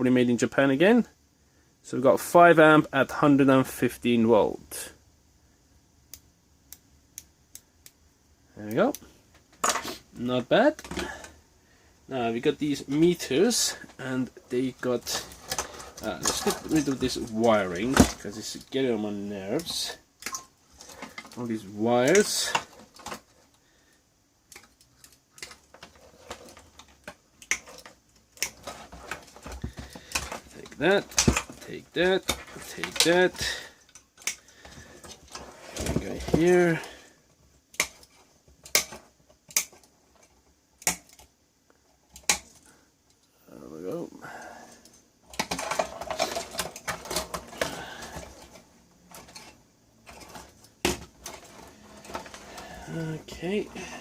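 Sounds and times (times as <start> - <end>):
clicking and rattling of parts: 14.8 - 18.8, 19.5 - 23.6, 24.4 - 43.3, 44.6 - 54.0.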